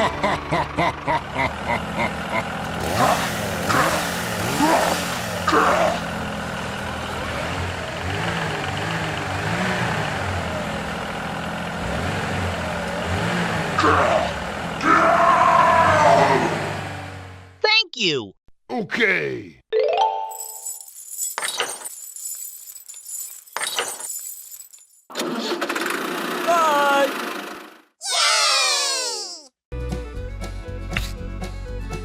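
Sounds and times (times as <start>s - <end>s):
motor revving: 1.8s - 17.4s.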